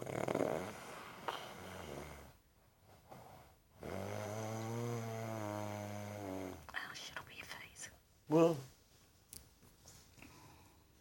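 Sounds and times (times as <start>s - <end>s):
person snoring: 0.0s - 2.4s, 3.8s - 6.6s.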